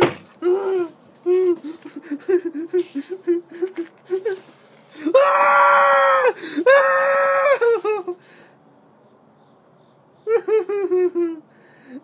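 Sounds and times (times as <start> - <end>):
person yelling: 5.0 - 7.8.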